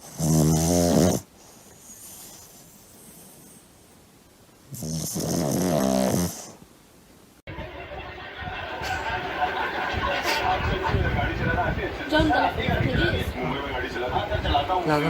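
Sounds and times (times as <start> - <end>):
dog snoring: 0.0 - 3.6, 4.7 - 6.6.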